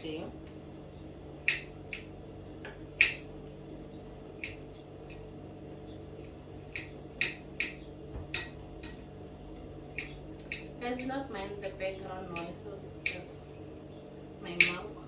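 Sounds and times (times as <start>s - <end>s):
steady low hum: 0.0s - 15.0s
utensils and glassware clinking: 1.4s - 3.3s, 6.2s - 9.1s, 9.9s - 13.4s, 14.5s - 14.9s.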